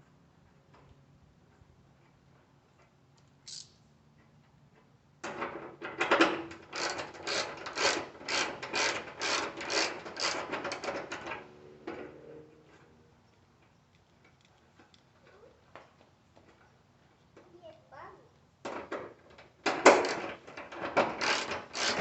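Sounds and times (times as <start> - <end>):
hand ratchet clicking: 6.7 - 11.0, 19.9 - 22.0.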